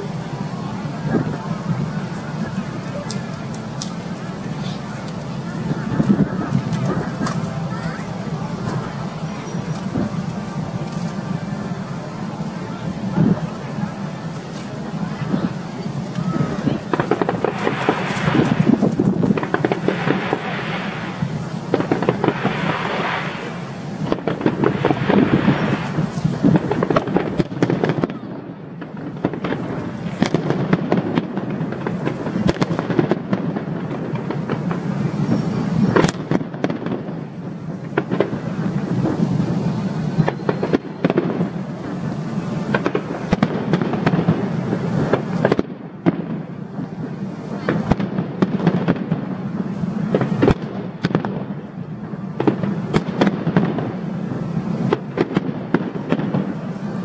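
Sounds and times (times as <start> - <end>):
fireworks bangs: 0.0 - 57.0
steady rumble: 0.0 - 57.0.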